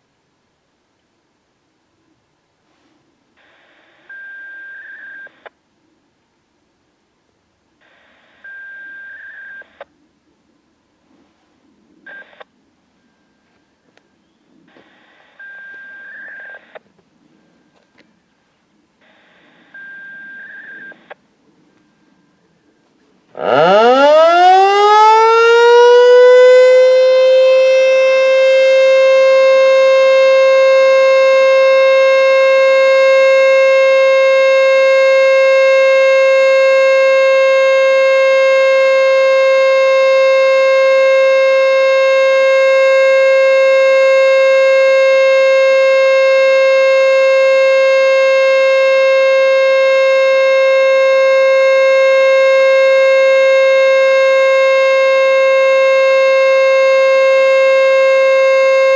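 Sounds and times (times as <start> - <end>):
warning siren steady tone: 23.3 - 58.9.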